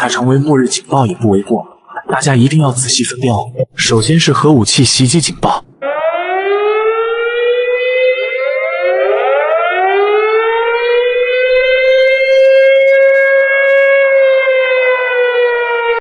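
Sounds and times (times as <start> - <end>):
air-raid sirens wailing: 5.8 - 16.0.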